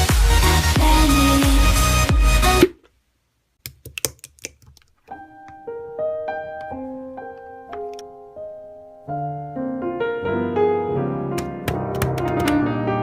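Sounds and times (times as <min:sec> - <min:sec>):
slow piano melody: 0:05.1 - 0:13.0.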